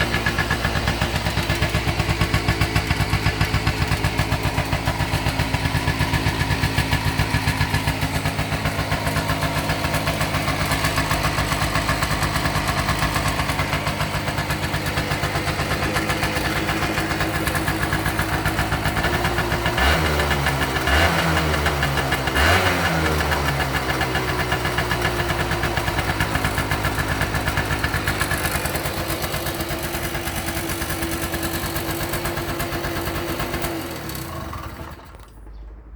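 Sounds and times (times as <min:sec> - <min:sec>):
scooter throttle blips: 0:00.0 - 0:35.6
scooter engine idling: 0:00.0 - 0:35.7.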